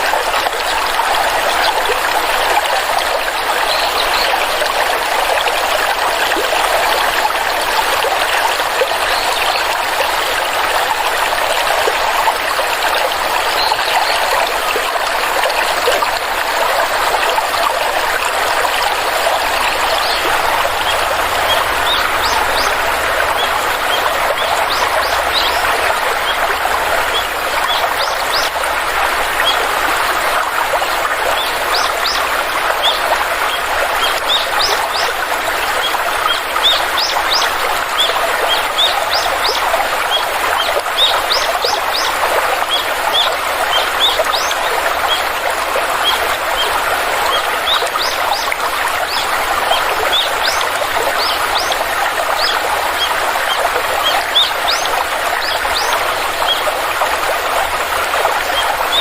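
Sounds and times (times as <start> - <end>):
stream water flowing: 0.0 - 59.0
small birds chirping: 19.3 - 28.6, 31.3 - 45.2.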